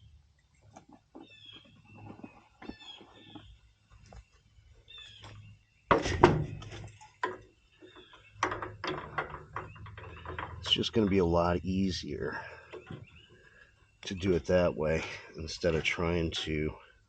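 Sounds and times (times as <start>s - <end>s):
birds chirping: 0.0s - 17.0s
tools clattering: 5.9s - 11.2s.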